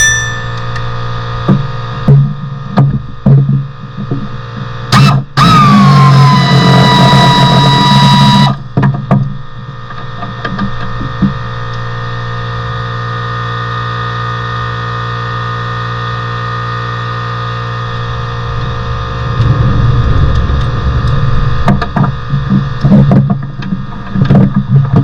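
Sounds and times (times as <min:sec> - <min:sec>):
low mechanical hum: 0:00.0 - 0:25.0
power tool whining: 0:04.9 - 0:08.6.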